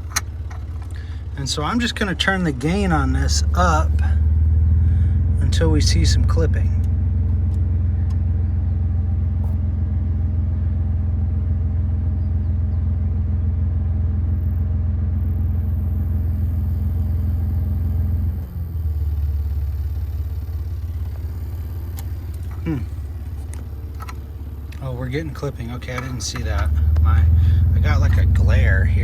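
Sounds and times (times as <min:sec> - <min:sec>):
subwoofer bass tone: 0:01.0 - 0:24.6, 0:25.2 - 0:29.0.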